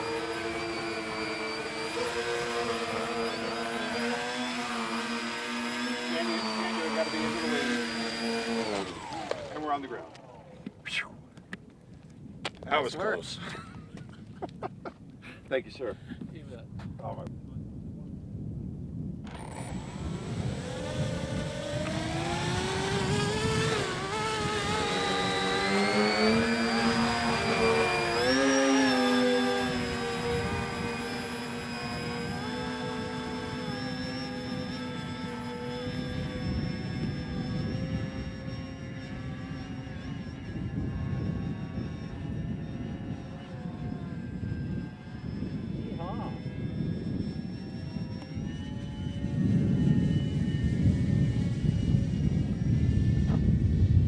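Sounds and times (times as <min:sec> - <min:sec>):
second lower motor tone: 0:00.0 - 0:10.4, 0:19.3 - 0:53.6
model aircraft motors whining: 0:00.0 - 0:14.6, 0:19.2 - 0:54.0
wind buffeting microphone: 0:00.0 - 0:54.0.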